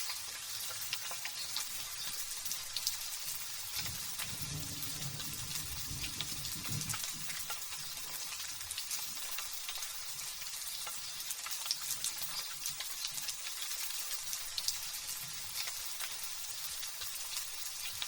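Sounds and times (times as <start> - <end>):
light drizzle hissing: 0.0 - 18.0
raindrop ticks: 3.7 - 10.0
low thunder rumble: 3.9 - 7.7.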